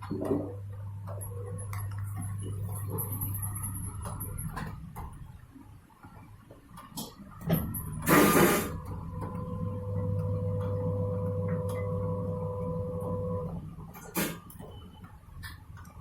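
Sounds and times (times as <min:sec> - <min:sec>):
washing machine motor humming: 0:07.5 - 0:14.3.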